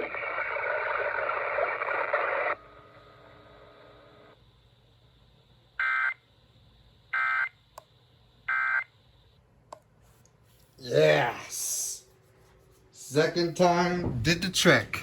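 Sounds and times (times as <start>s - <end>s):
loud broadcast sound: 0.0s - 2.6s, 10.8s - 12.1s, 13.0s - 15.0s.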